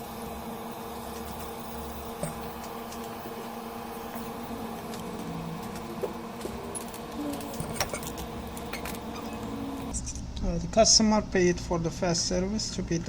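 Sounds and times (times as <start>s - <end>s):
equipment hum and fan hiss: 0.0s - 13.0s.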